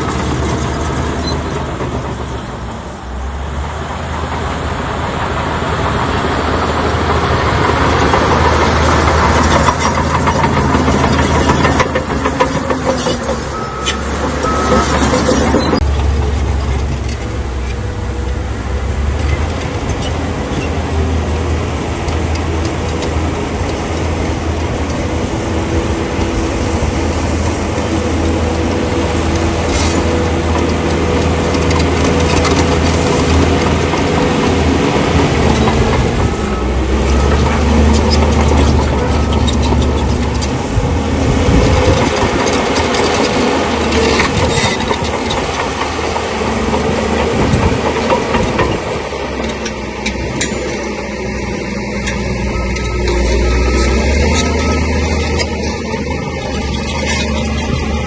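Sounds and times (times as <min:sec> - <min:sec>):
machine grinding and rattling: 0:00.0 - 0:02.9, 0:03.9 - 0:58.0
bulldozer diesel engine: 0:00.0 - 0:58.0.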